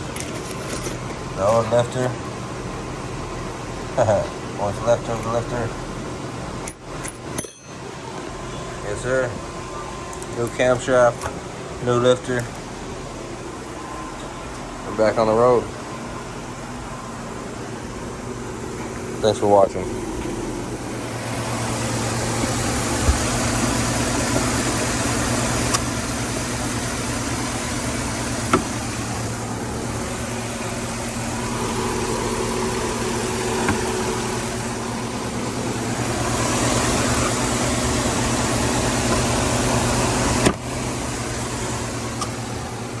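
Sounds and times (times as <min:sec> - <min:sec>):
engine running steadily: 0:00.0 - 0:43.0
faint engine clicks: 0:10.0 - 0:11.4, 0:21.9 - 0:30.0, 0:40.2 - 0:43.0.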